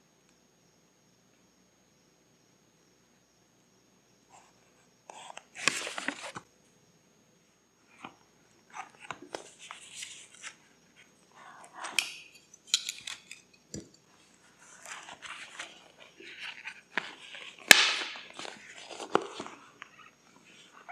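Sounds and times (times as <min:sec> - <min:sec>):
paper rustling: 0:05.1 - 0:06.4, 0:08.7 - 0:11.1, 0:14.4 - 0:20.9.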